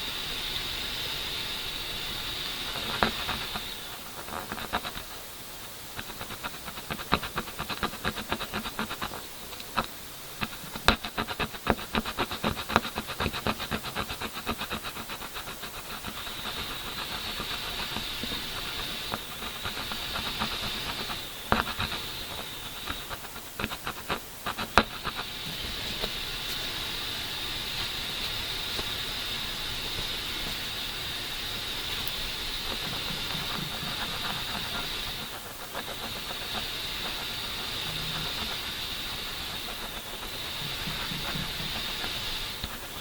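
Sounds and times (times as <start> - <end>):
steady high hiss: 0.0 - 43.0
scraping paint off canvas: 5.9 - 26.9.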